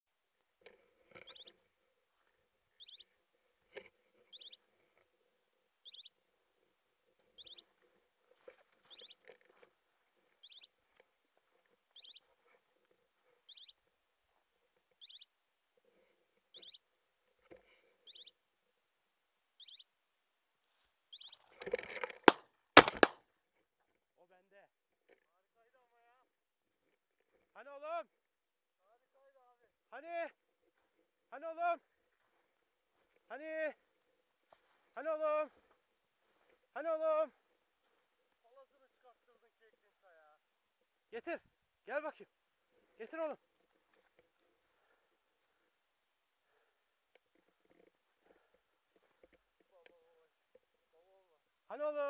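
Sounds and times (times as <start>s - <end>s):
shotgun shots: 22.3s - 23.2s.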